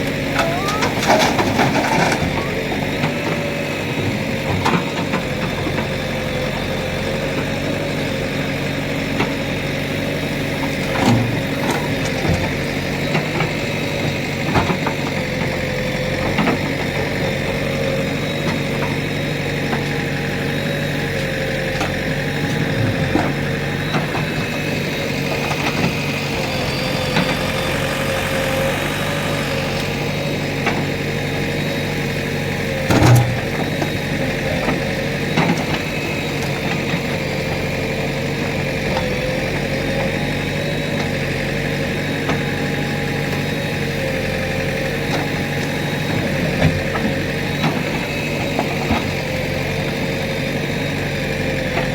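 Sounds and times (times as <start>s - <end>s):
diesel engine running: 0.0s - 18.1s, 18.7s - 38.2s.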